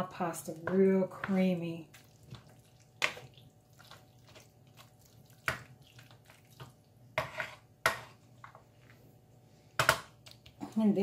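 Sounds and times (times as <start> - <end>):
pasta squelching in a pan: 0.0 - 10.9.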